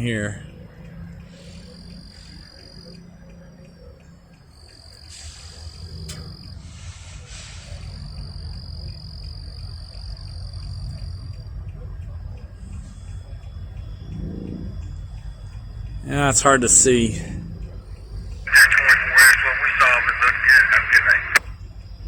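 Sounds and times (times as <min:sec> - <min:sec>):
insects droning: 0:18.5 - 0:21.4.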